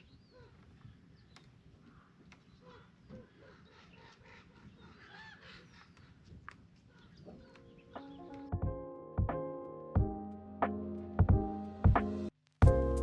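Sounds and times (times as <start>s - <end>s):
faint birds chirping and honking: 0.0s - 8.8s.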